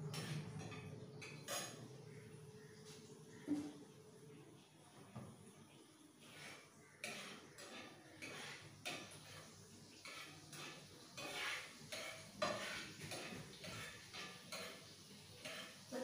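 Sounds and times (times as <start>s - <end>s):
metal utensil scraping a pan: 0.0s - 2.2s, 6.2s - 16.0s.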